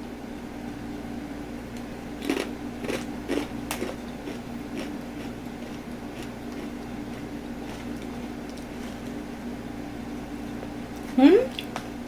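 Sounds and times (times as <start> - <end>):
crunching crispy chips: 2.2 - 6.7.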